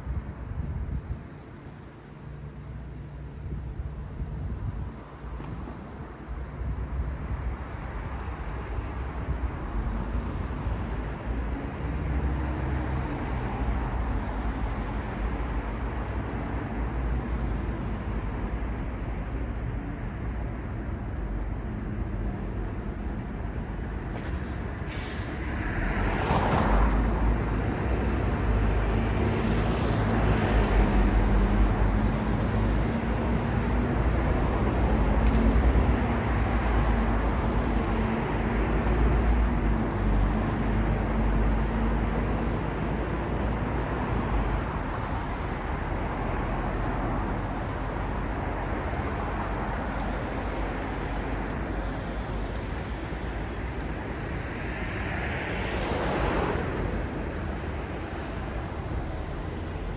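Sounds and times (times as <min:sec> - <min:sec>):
city street traffic: 0:00.0 - 0:59.9
heavy vehicle engine hum: 0:22.4 - 0:59.9.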